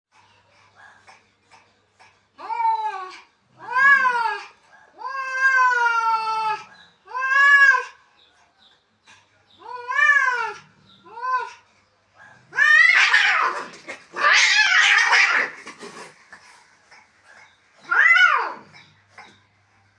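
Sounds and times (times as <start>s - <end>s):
cats yowling in a fight: 2.4s - 8.0s, 9.6s - 11.6s, 12.4s - 16.2s, 17.8s - 18.8s.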